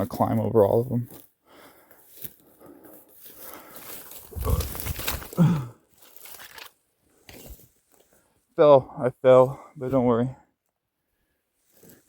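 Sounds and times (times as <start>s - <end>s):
footsteps crackling through brush: 0.7s - 8.3s
short falling grunt: 4.4s - 5.8s.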